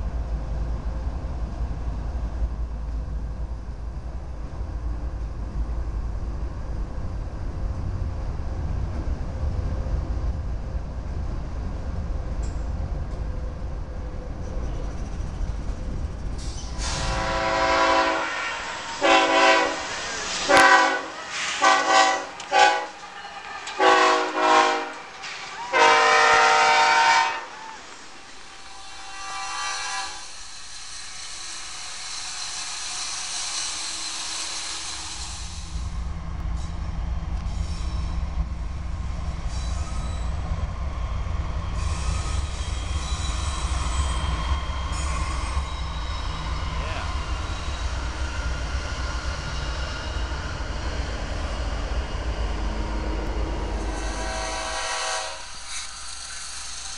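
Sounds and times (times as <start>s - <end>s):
train rolling on rails: 0.0s - 56.9s
locomotive horn blasts: 16.8s - 23.0s, 23.8s - 25.1s, 25.7s - 27.6s, 54.1s - 55.5s.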